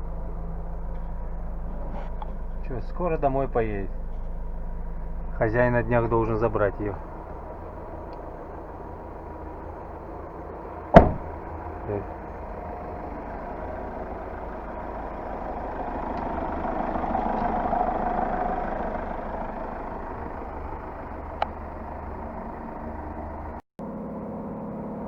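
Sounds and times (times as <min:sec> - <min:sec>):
diesel engine idling: 0:00.0 - 0:25.0.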